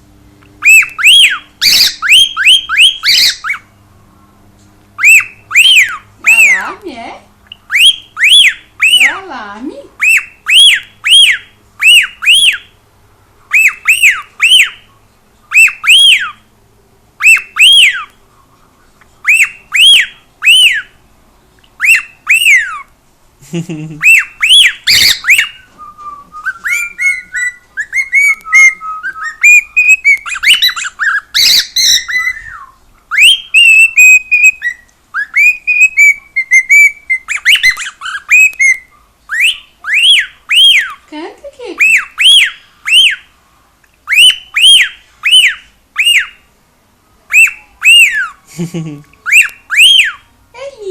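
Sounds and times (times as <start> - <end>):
cockatiel whistling: 0.6 - 3.7, 5.0 - 6.7, 7.5 - 9.2, 10.0 - 12.8, 13.5 - 14.9, 15.5 - 16.5, 17.2 - 18.2, 19.2 - 21.0, 21.7 - 22.9, 24.0 - 41.0, 41.8 - 43.3, 44.0 - 46.5, 47.3 - 48.4, 49.2 - 50.3.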